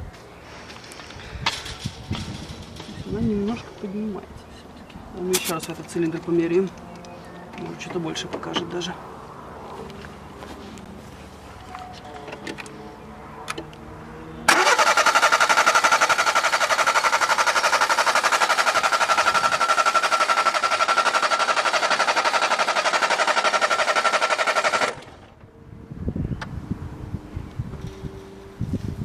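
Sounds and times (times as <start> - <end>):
starter motor cranking engine: 14.5 - 25.4.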